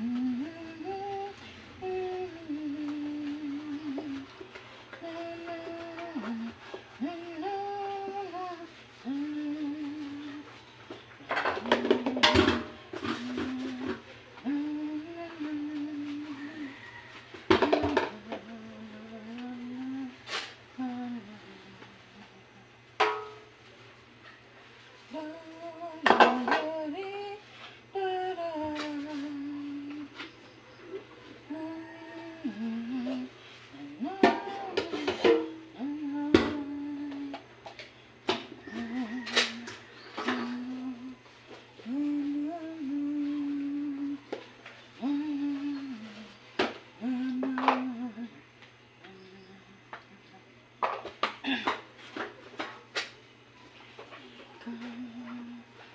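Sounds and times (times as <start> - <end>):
woman humming: 0.0 - 22.9, 25.0 - 50.6, 51.4 - 51.8, 54.0 - 55.9
dishes clinking: 23.0 - 23.5.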